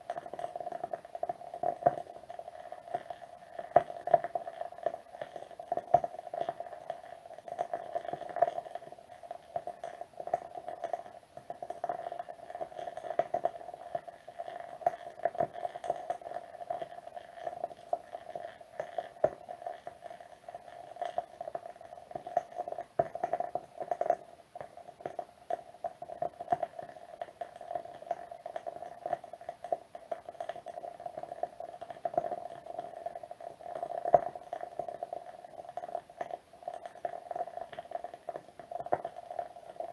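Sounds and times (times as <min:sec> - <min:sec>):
candle crackling and popping: 0:00.0 - 0:39.9.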